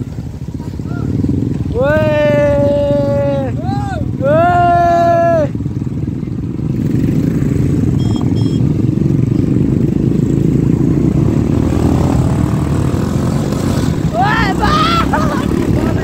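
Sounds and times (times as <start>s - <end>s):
short high beeps: 7.9s - 8.7s.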